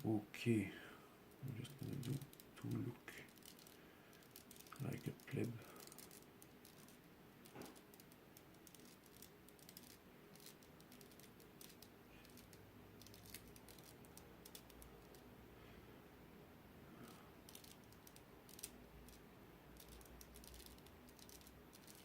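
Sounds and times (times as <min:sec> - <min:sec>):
puzzle cube clicking: 0:01.5 - 0:15.3, 0:17.4 - 0:22.0.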